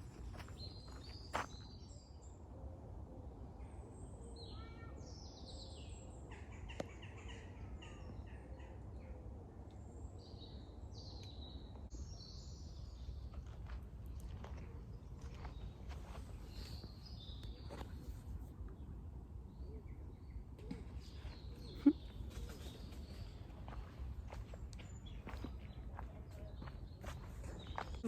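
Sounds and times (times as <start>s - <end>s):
birds chirping: 0.0s - 2.3s, 9.9s - 28.0s.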